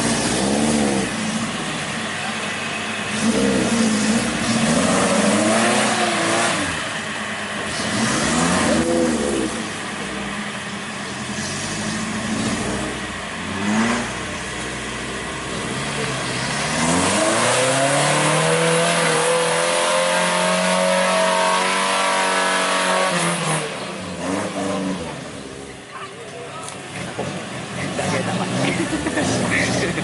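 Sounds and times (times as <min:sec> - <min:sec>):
engine revving hard: 0:00.0 - 0:01.5, 0:03.0 - 0:07.0, 0:07.6 - 0:09.8, 0:11.2 - 0:14.5, 0:15.4 - 0:25.6.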